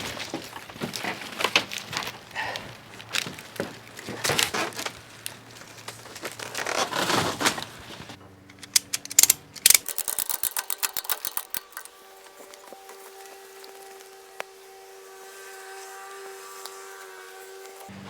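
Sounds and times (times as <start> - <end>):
junk materials knocking and scraping: 0.0 - 13.0
sharp mechanical clicks: 8.4 - 12.0.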